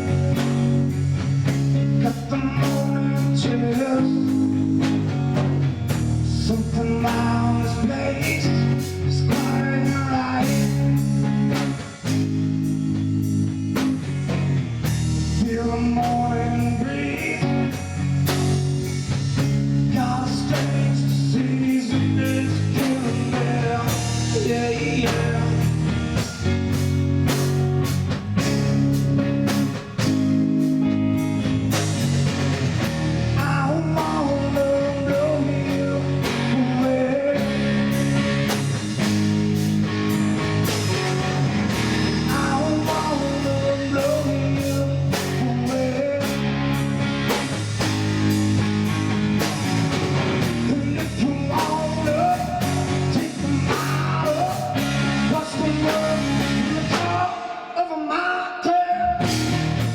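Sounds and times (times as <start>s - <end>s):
drum kit steady beat: 0.0s - 57.4s, 59.2s - 59.9s
lead guitar bending: 0.0s - 57.4s, 59.2s - 59.9s
rhythm guitar: 0.0s - 57.6s, 59.0s - 59.9s
bass: 0.0s - 59.9s.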